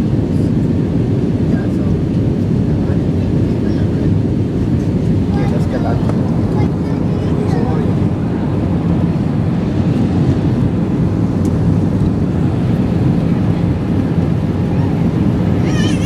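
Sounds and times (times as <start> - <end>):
jet engines rumbling: 0.0 - 16.0
rushing air: 4.0 - 15.7.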